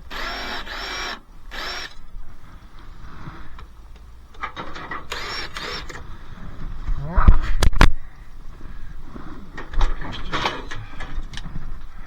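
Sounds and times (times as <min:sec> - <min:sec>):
cordless drill whine: 0:00.0 - 0:02.0, 0:05.1 - 0:06.0.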